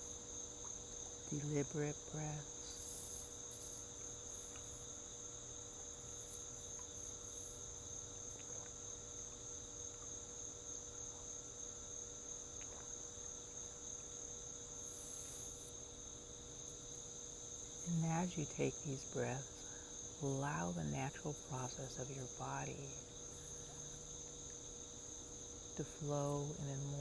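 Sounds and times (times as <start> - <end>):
crickets chirring: 0.0 - 27.0.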